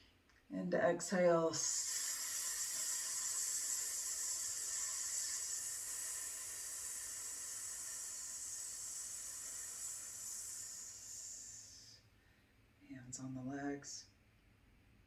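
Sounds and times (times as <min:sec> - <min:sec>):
hiss breathed through teeth: 0:01.6 - 0:12.1.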